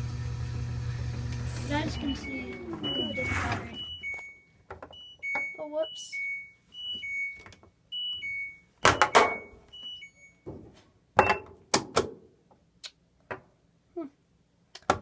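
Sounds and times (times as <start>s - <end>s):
washing machine panel beeps: 1.7s - 10.4s.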